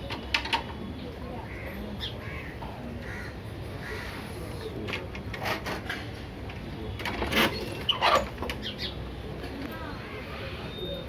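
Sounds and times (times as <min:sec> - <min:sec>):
crows cawing: 0:01.5 - 0:04.2.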